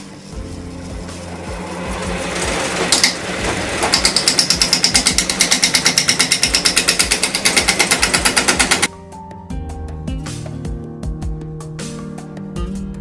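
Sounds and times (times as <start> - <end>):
gouge knocking on spinning wood: 0.9 - 8.9.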